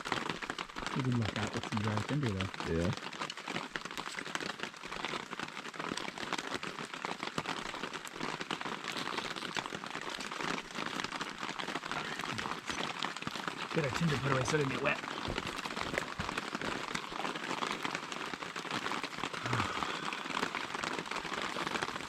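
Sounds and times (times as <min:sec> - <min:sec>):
rain falling: 0:00.0 - 0:22.0.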